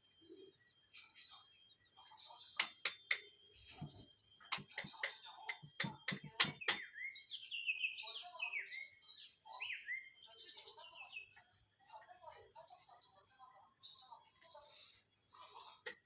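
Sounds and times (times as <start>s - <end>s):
bird chirping: 0.0s - 16.0s
sharp clicks and knocks: 2.6s - 6.8s.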